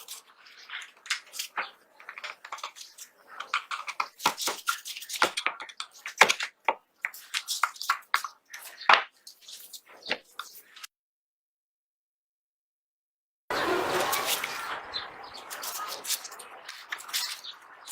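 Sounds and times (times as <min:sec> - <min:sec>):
pistol parts clicking and clattering: 0:00.8 - 0:09.1.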